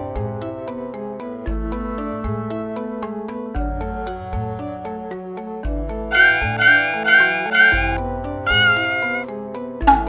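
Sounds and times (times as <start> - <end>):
high cat meows: 6.2 - 9.3.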